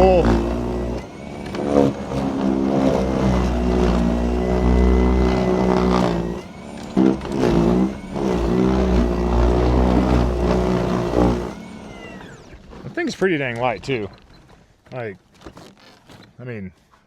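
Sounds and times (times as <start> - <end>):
electric snowblower motor whine: 0.0 - 13.0.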